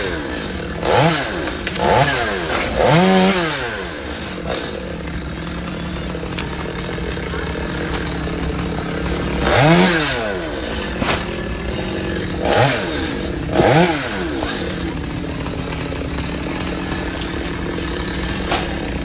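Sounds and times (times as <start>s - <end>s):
chainsaw engine revving: 0.0s - 19.0s.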